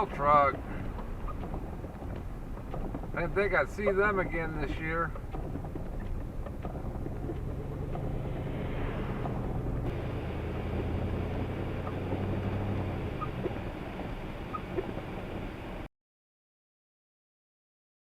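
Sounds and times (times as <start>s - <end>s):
snowplow truck driving past: 6.8s - 15.9s.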